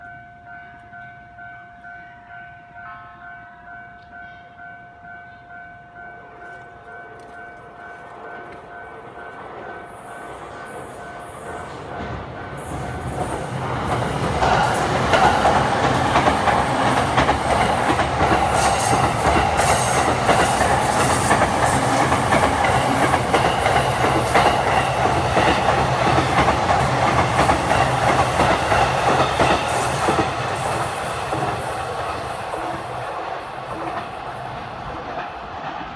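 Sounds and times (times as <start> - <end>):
train rumble and wheel clatter: 3.8 - 35.9.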